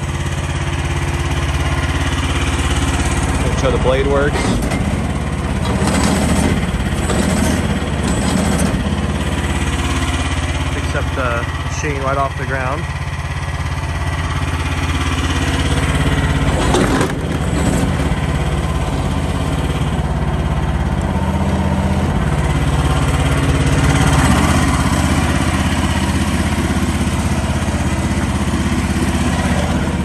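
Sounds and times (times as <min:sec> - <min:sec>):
small excavator engine running: 0:00.0 - 0:30.0
clunk: 0:04.2 - 0:10.0, 0:15.8 - 0:21.2.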